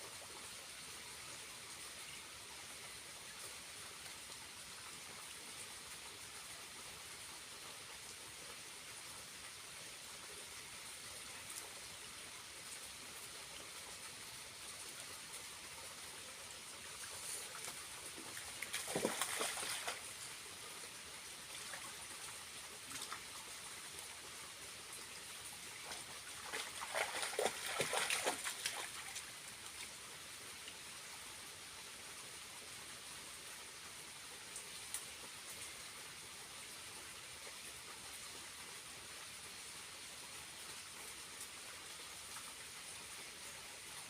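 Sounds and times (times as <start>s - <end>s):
small waterfall trickling: 0.0s - 44.0s
water splashing: 17.5s - 20.3s, 25.9s - 29.3s.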